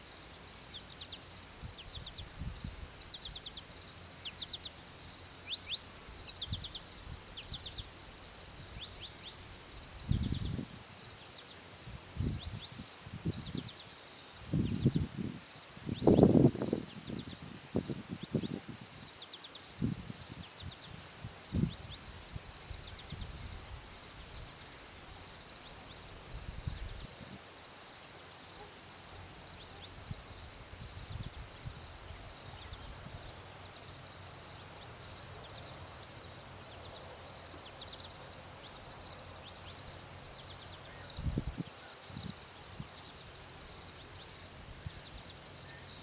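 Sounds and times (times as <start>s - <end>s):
insect chorus buzzing: 0.0s - 46.0s.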